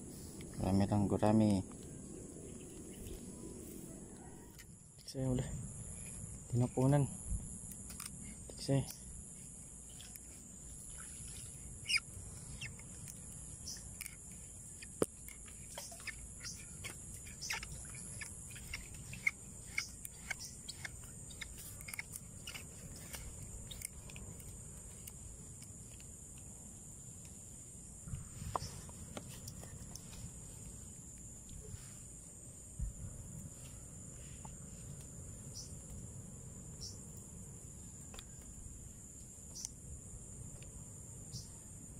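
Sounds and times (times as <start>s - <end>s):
crickets trilling: 0.0s - 41.9s
insect chirps and clicks: 0.0s - 41.9s
sharp ticks: 12.6s - 26.4s.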